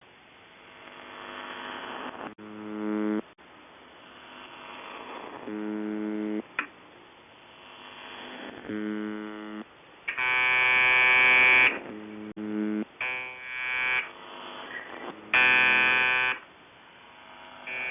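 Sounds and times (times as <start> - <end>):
electric buzzer buzzing: 2.4 - 3.2, 5.5 - 6.4, 8.6 - 14.1, 15.2 - 16.4, 17.4 - 17.9.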